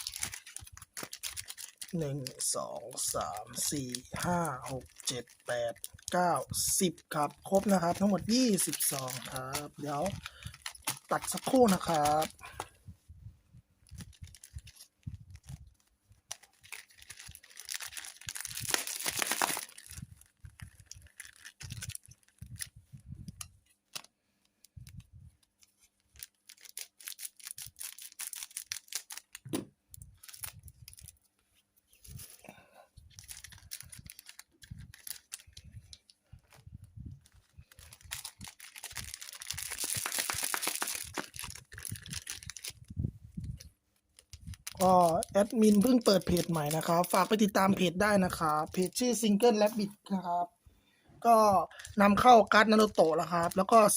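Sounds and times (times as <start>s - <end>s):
foil packs cutting or tearing: 0.0s - 2.4s, 16.6s - 20.0s, 38.1s - 42.7s
foil wrappers crinkling: 0.0s - 12.8s, 13.8s - 22.8s, 24.9s - 49.9s, 51.6s - 53.9s.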